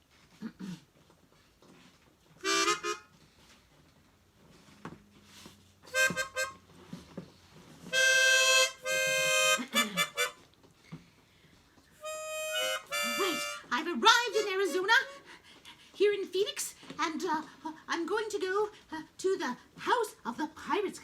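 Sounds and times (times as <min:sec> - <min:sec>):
harmonica playing: 0:02.4 - 0:03.1, 0:05.9 - 0:06.6, 0:07.9 - 0:10.4, 0:12.0 - 0:15.4.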